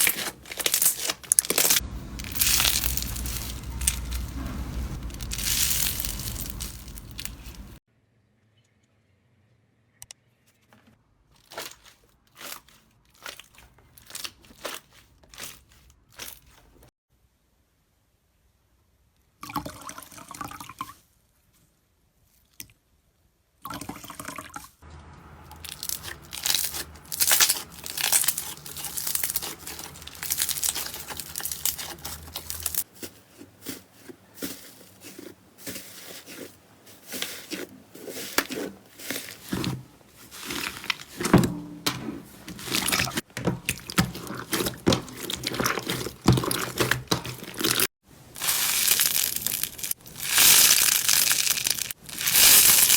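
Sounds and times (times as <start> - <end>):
slime squishing and popping: 0.0 - 7.8, 25.6 - 32.8, 39.5 - 52.9.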